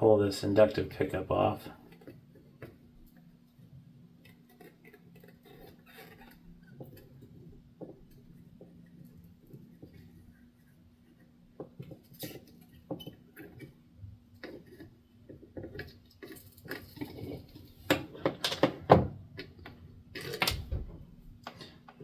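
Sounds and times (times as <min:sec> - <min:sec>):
tools clicking and scraping on circuit board: 0:04.2 - 0:13.8, 0:14.4 - 0:18.8.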